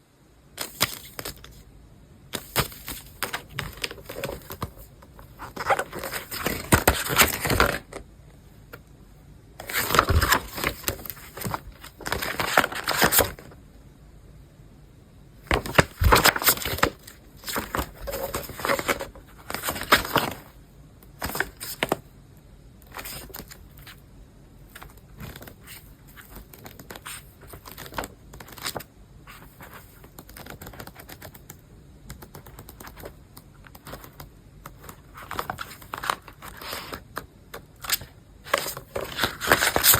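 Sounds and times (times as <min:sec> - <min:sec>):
packaging crinkling and rustling: 0:09.6 - 0:13.4, 0:15.5 - 0:20.5.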